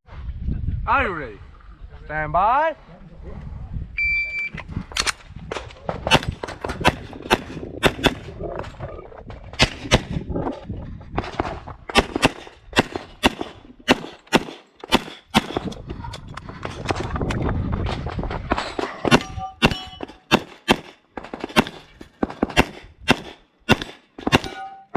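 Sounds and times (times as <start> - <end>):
rapid pistol shots: 6.1 - 8.3, 11.9 - 15.7, 19.1 - 24.7.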